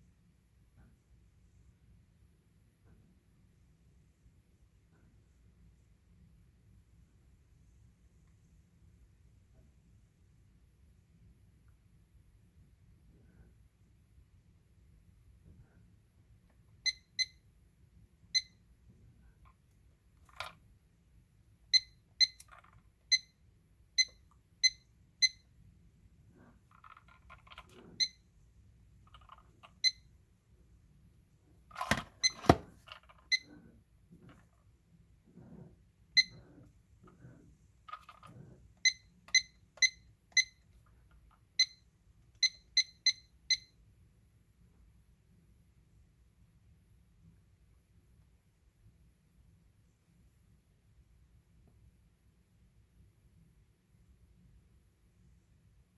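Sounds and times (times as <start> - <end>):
digital clock key beeps: 16.9 - 17.4, 18.4 - 18.6, 21.7 - 22.5, 24.0 - 25.4, 36.2 - 36.4, 38.8 - 40.6, 41.6 - 41.8, 42.4 - 43.7
plastic unit being handled: 31.7 - 33.3.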